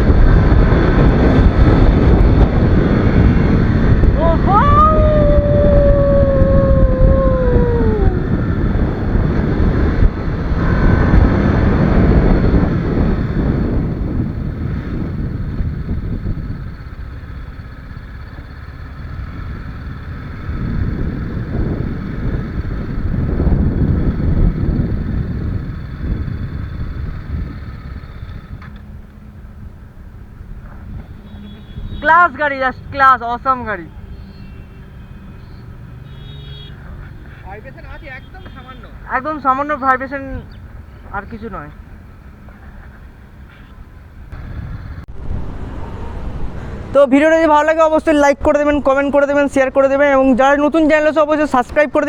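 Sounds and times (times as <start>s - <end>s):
wind rush on microphone: 0.0s - 18.2s, 19.0s - 28.8s, 43.9s - 52.0s
motorcycle engine: 0.0s - 32.0s, 41.8s - 49.4s.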